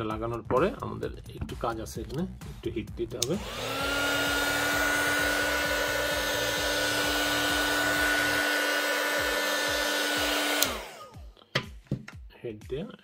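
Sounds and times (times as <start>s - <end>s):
hot-air blower running: 3.2s - 11.3s.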